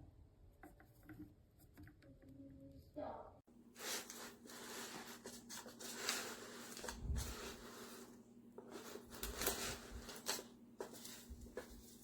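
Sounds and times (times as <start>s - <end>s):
packaging rubbing and rustling: 3.7s - 12.0s.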